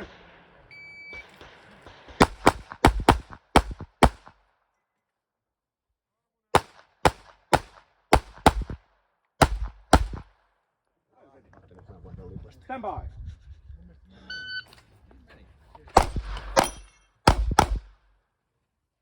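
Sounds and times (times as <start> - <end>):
pistol shots in rapid strings: 1.3 - 4.4, 6.6 - 8.8, 9.4 - 10.3, 16.0 - 18.0.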